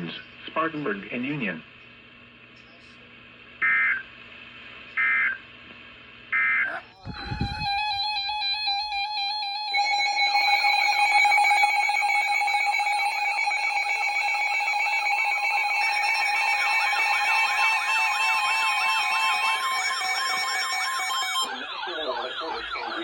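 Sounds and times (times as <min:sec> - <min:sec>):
warbling siren-like tone: 0:06.7 - 0:23.0
electronic alert tones pulsing: 0:07.0 - 0:23.0.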